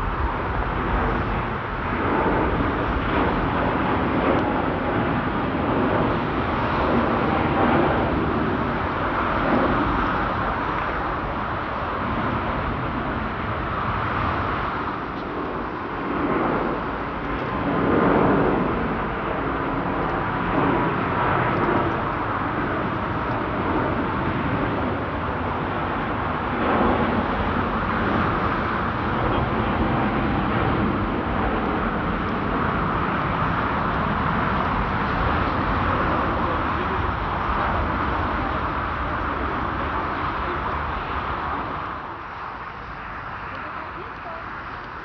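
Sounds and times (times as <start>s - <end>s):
jet engines roaring: 0.0s - 45.0s.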